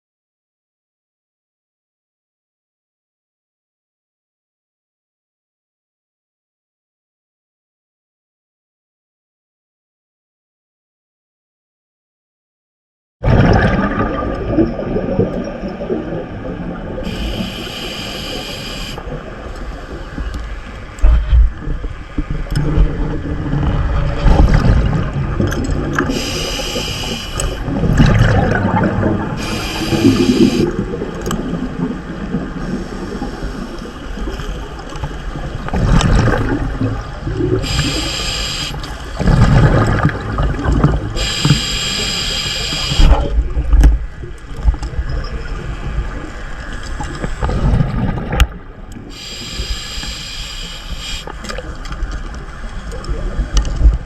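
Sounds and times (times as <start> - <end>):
rumble of moving water: 13.2 - 54.0
bubbling exhalations: 13.3 - 15.2, 26.1 - 31.0
hissing regulator inhalation: 17.0 - 19.0, 26.1 - 27.7, 29.4 - 30.8, 37.6 - 39.0, 41.2 - 43.1, 49.1 - 51.3.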